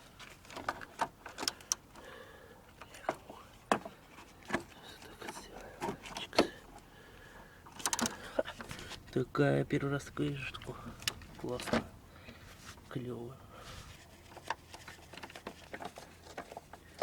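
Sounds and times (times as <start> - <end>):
spanner clicking on bolts: 0.3 - 2.1, 7.7 - 12.9.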